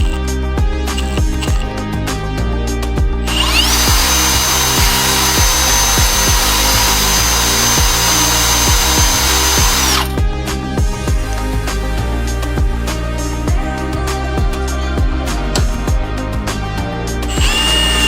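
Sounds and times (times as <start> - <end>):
background music: 0.0 - 18.0
electric drill whining: 3.3 - 10.1, 17.2 - 18.0.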